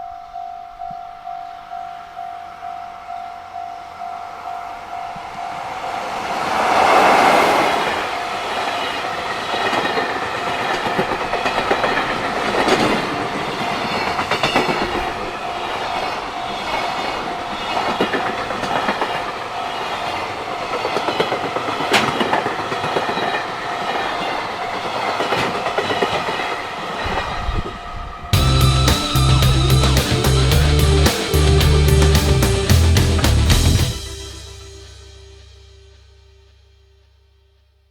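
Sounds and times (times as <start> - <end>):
level-crossing warning bell: 0.0 - 6.8, 8.0 - 36.2
locomotive passing loudly: 3.9 - 35.2
train wheels clacking over rail joints: 8.7 - 27.2.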